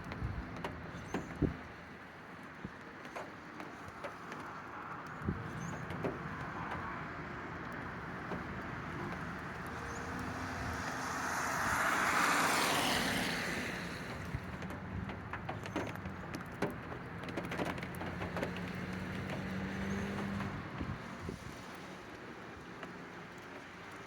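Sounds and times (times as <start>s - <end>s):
vehicle passing by: 6.5s - 15.1s, 17.4s - 21.8s.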